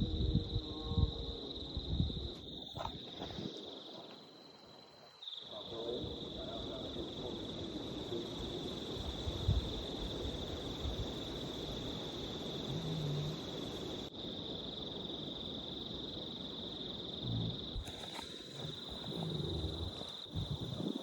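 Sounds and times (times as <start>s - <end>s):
high-pitched insect drone: 0.0s - 3.8s.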